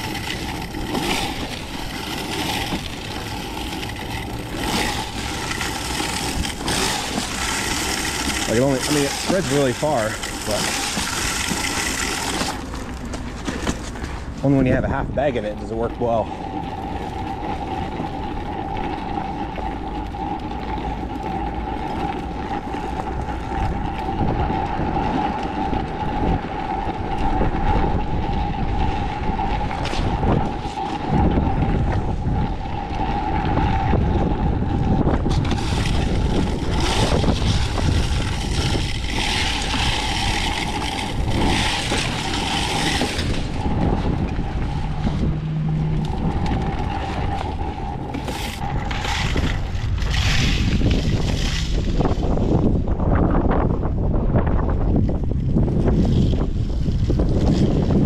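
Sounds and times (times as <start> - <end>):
steady high whine: 0.0 - 55.7
strong wind on microphone: 14.1 - 58.0.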